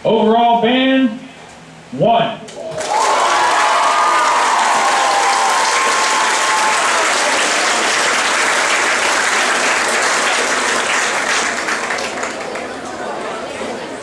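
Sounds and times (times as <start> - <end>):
high cheers: 2.7 - 12.4
audience applauding: 2.7 - 13.2.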